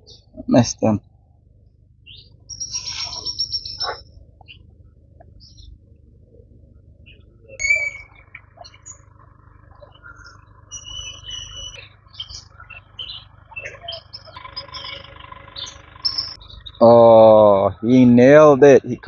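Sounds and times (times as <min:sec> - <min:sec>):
birds chirping: 0:00.0 - 0:19.0
insect buzz: 0:02.1 - 0:05.8, 0:07.0 - 0:18.1.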